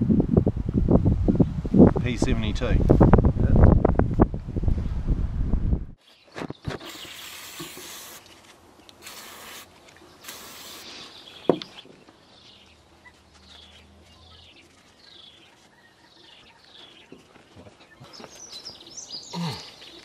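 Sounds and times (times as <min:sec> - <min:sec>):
short high hissing bursts: 0:06.8 - 0:08.2, 0:09.0 - 0:11.2
small birds chirping: 0:08.7 - 0:20.0.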